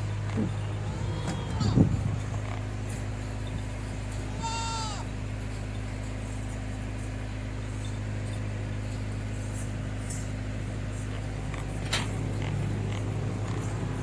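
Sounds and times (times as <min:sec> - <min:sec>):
low mechanical hum: 0:00.0 - 0:14.0
goat bleating: 0:00.2 - 0:02.6, 0:04.2 - 0:05.1.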